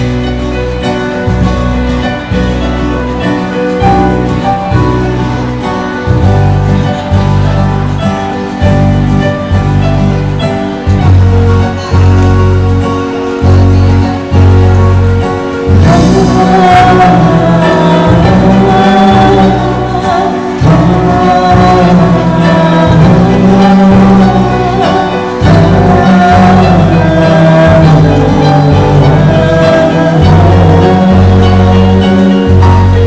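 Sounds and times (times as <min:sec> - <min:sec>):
held chords music: 0:00.0 - 0:33.0
song with singing and bass: 0:00.0 - 0:33.0.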